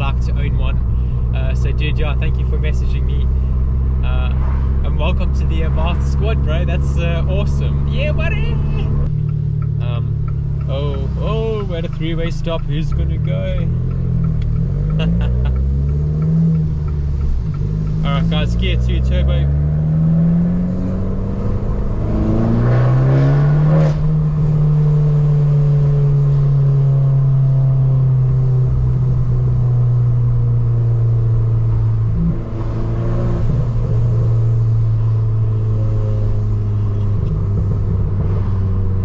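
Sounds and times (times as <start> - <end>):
car engine accelerating: 0.0 - 39.0.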